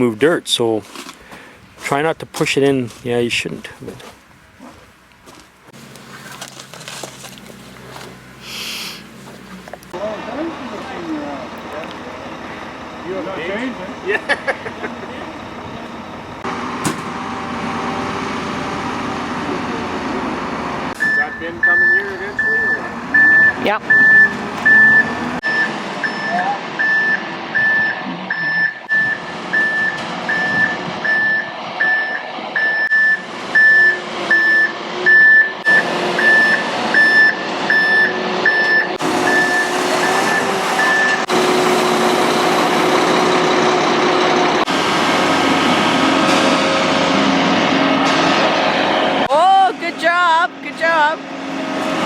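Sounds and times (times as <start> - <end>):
diesel engine running: 3.3 - 52.0
truck back-up alarm beeping: 8.2 - 46.2.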